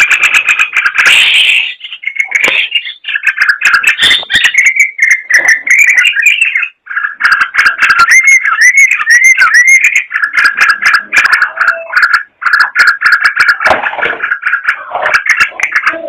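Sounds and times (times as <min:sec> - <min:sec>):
bird singing chattering whistles: 0:01.1 - 0:12.2.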